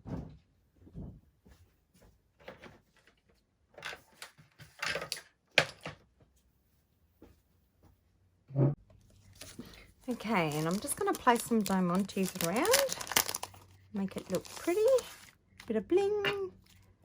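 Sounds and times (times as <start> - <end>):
hands handling craft supplies: 8.9 - 17.0.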